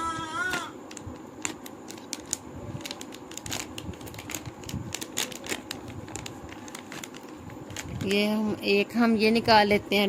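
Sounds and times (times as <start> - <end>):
plastic packaging crinkling: 0.8 - 8.6.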